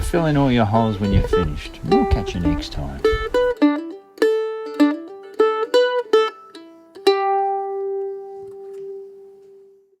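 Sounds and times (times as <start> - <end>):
plucked string instrument music: 0.0 - 9.9.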